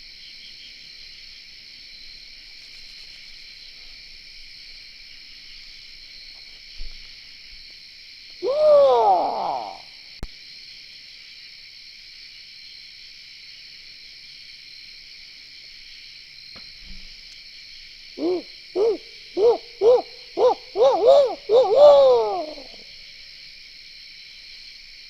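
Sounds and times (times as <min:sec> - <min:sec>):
night insects chorus: 0:00.0 - 0:25.0
owl hooting: 0:08.4 - 0:09.8, 0:18.2 - 0:22.9.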